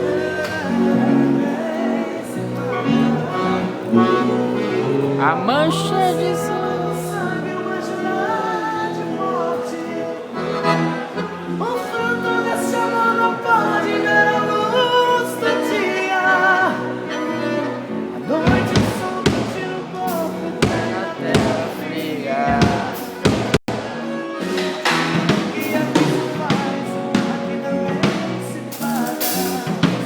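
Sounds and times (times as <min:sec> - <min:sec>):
live band music: 0:00.0 - 0:30.0
drum hits: 0:18.5 - 0:21.8, 0:22.5 - 0:23.9, 0:24.5 - 0:27.4.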